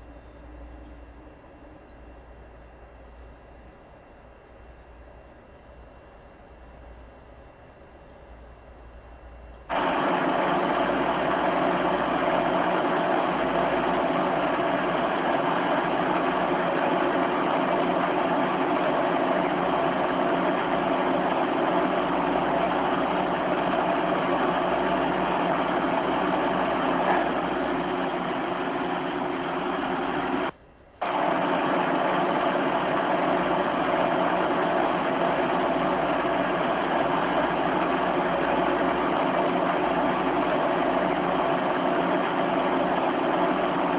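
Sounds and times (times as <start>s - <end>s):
low hum: 9.7s - 43.9s
steady hiss: 9.7s - 43.9s.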